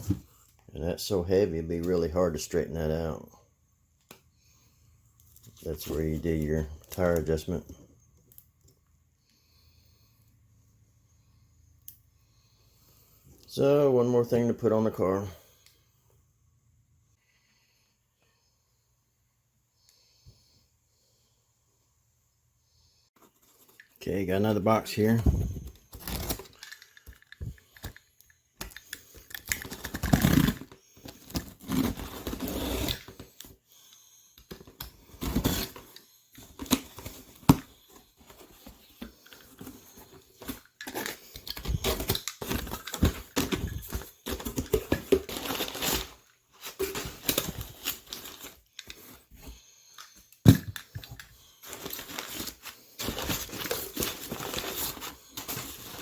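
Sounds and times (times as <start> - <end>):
packing tape tearing: 25.9 - 27.1, 28.8 - 33.3, 40.4 - 49.1
packing material crinkling: 29.0 - 33.2, 38.2 - 49.1, 50.8 - 56.0.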